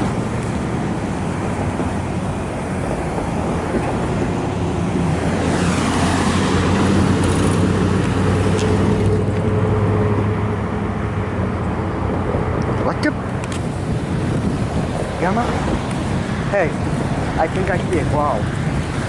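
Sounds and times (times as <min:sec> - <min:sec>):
freight train cars rumbling past: 0:00.0 - 0:19.0.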